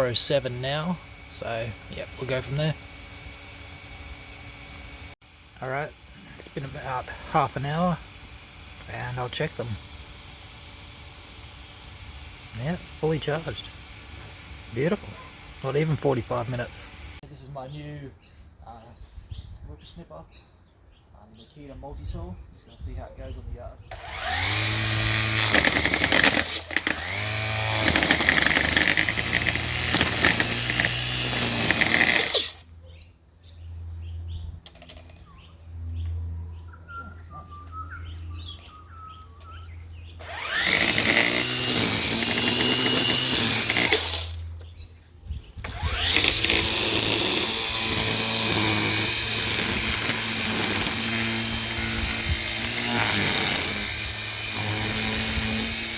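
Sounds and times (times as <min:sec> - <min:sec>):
electric string trimmer whining: 0:00.0 - 0:17.2, 0:23.9 - 0:32.8, 0:40.1 - 0:44.8, 0:45.6 - 0:55.9.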